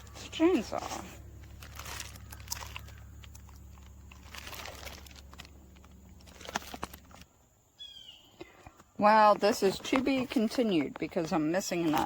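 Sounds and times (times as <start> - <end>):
plastic packaging crinkling: 0.0 - 7.4
steady low hum: 0.0 - 8.5.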